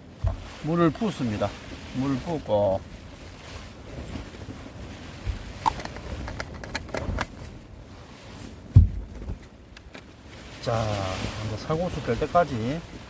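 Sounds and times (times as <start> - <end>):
low wind rumble: 0.0 - 13.0
heavy thump: 8.7 - 9.4.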